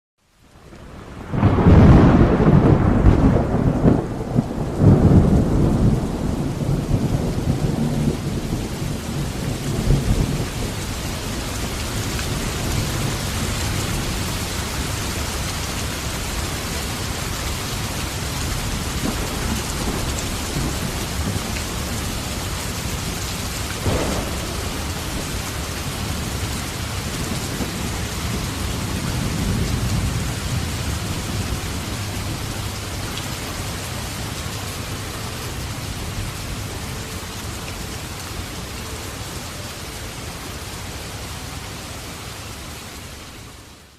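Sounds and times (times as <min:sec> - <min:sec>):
heavy rain falling: 0:00.2 - 0:43.9
rolling thunder: 0:00.9 - 0:15.4, 0:17.9 - 0:37.0.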